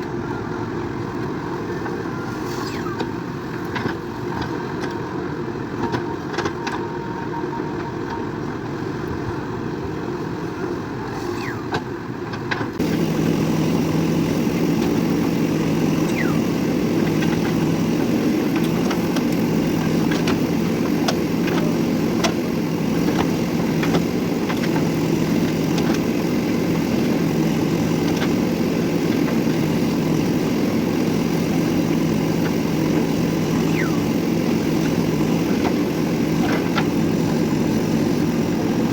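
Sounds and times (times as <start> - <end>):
diesel engine running: 9.8 - 38.9
steady low hum: 12.8 - 38.9.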